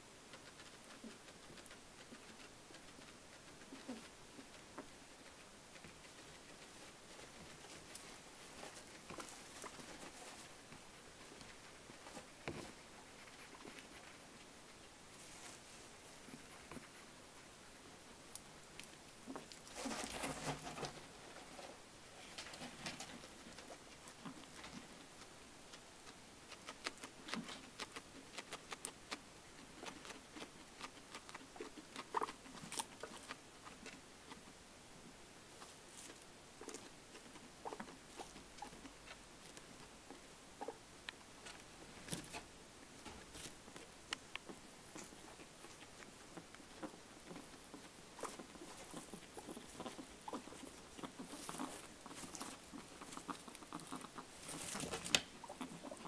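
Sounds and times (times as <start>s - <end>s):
pet eating crunching: 0.1s - 34.6s, 35.6s - 56.0s.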